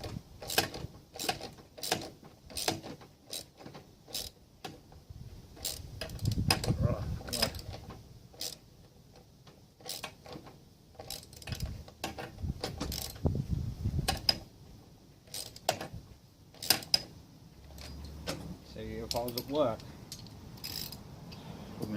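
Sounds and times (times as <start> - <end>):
metal tools clinking on metal: 18.8 - 21.0.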